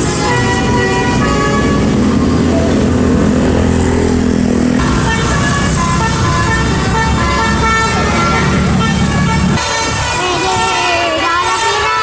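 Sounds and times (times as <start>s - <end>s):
bus musical horn melody: 0.0s - 4.1s, 4.8s - 12.0s
heavy bus engine running: 0.0s - 10.7s.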